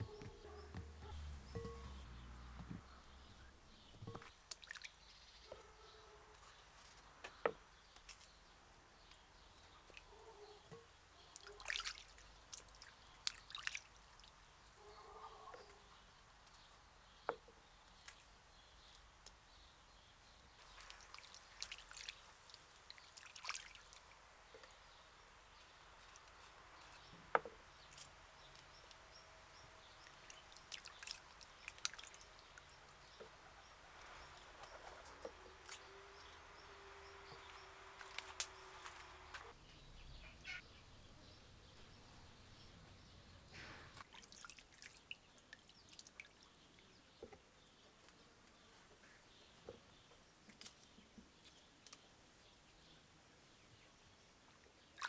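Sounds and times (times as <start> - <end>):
rustling or splashing handling: 10.8 - 14.4, 20.5 - 24.9, 29.8 - 36.0.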